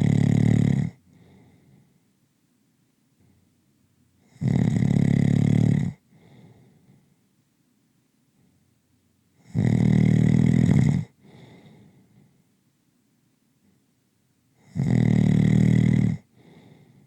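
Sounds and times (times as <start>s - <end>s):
person snoring: 0.0s - 1.0s, 4.3s - 6.0s, 9.4s - 11.1s, 14.6s - 16.7s.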